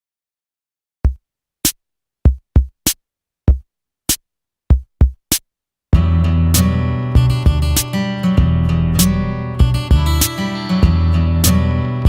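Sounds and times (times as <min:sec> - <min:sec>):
drum machine beat: 0:02.3 - 0:03.7, 0:04.7 - 0:11.6
backing music: 0:06.0 - 0:12.0.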